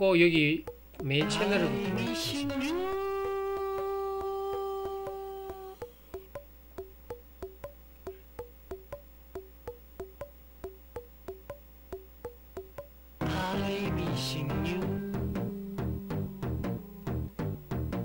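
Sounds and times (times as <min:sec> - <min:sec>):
held synth note: 0:01.2 - 0:05.9, 0:13.2 - 0:18.0
electronic music with bass and drums: 0:12.6 - 0:18.0.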